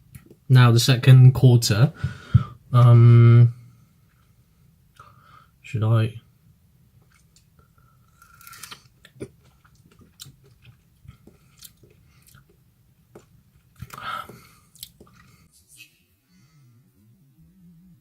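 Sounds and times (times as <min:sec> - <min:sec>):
person chewing wetly: 0:07.0 - 0:15.5.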